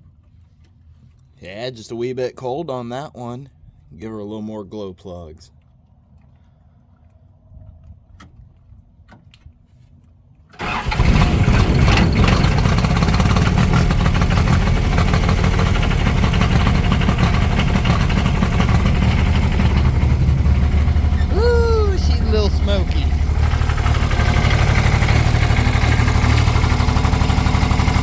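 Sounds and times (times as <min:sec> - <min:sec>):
diesel engine starting and running: 0:10.6 - 0:28.0.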